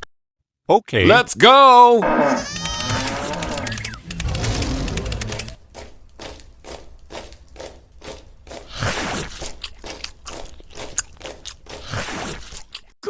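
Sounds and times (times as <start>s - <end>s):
mini tractor crunching through mud: 2.4s - 11.9s.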